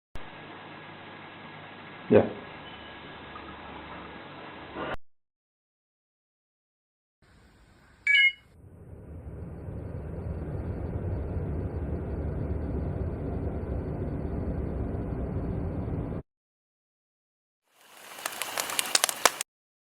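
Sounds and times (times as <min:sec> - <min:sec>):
low rumbling noise: 0:08.5 - 0:16.2.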